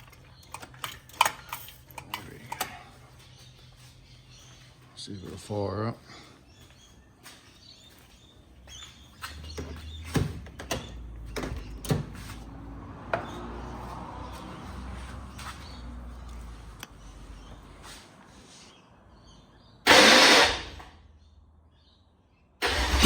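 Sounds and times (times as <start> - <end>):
car engine cranking on starter: 22.6 - 23.0.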